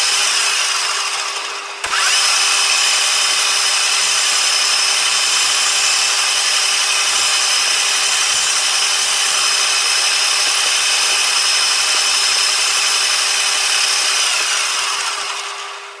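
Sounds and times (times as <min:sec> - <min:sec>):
lathe motor hum: 0:00.0 - 0:16.0.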